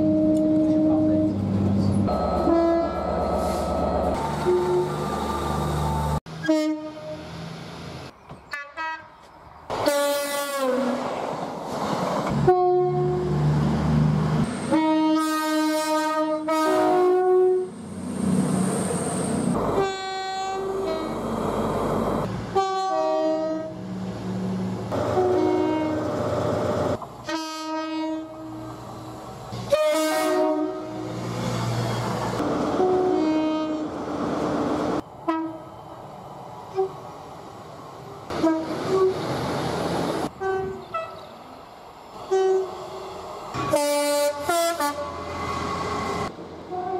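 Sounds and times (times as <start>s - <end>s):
two-tone train horn blasts: 0.0s - 1.4s, 2.1s - 3.1s, 4.4s - 5.0s, 6.4s - 7.3s, 8.5s - 9.2s, 9.8s - 11.0s, 12.4s - 13.3s, 14.7s - 17.7s, 19.6s - 21.2s, 22.5s - 23.8s, 24.9s - 26.2s, 27.3s - 28.7s, 29.7s - 31.1s, 32.7s - 34.0s, 35.3s - 35.7s, 38.3s - 39.1s, 40.4s - 41.2s, 42.3s - 42.7s, 43.6s - 45.3s
train running noise: 0.1s - 15.2s, 16.6s - 46.9s.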